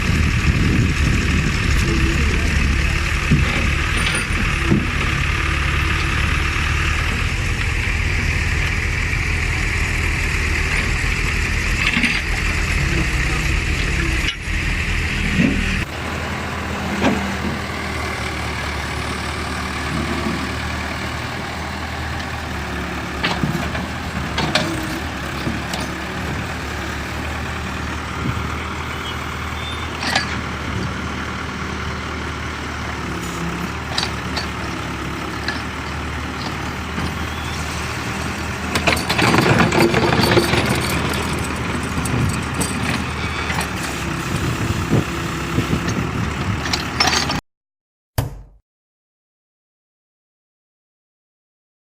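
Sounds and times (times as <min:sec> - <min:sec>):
diesel excavator engine running: 0:00.0 - 0:47.4
machine clanking: 0:38.7 - 0:43.8.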